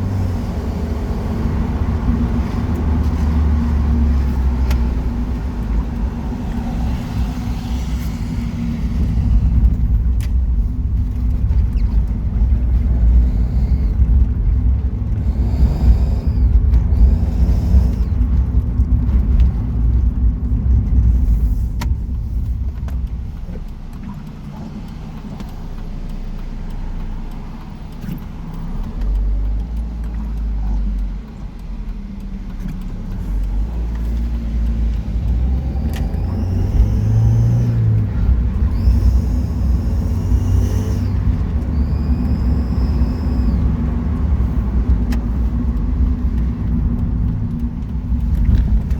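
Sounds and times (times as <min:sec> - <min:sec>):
car engine and exhaust rumble: 0:00.0 - 0:48.9
short high-pitched whirs: 0:15.2 - 0:18.3, 0:35.5 - 0:43.8.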